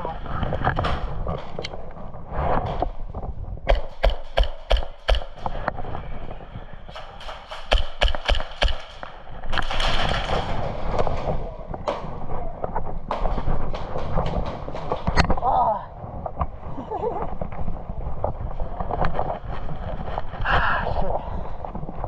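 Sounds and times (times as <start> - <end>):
airsoft guns firing: 3.7 - 5.7, 6.9 - 10.9.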